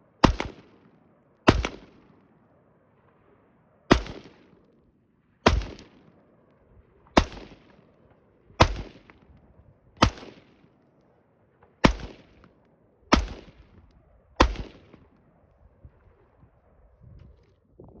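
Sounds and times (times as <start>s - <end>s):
rifle shots echoing: 0.2s - 2.3s, 3.9s - 4.7s, 5.4s - 6.2s, 7.2s - 8.0s, 8.6s - 9.3s, 10.0s - 10.8s, 11.8s - 15.2s.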